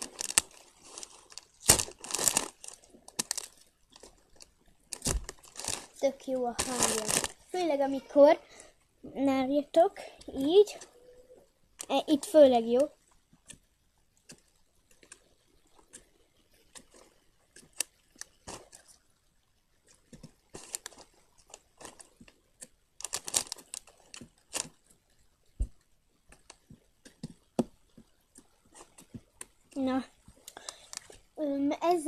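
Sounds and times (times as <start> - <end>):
slime squelching and popping: 0.0 - 7.5.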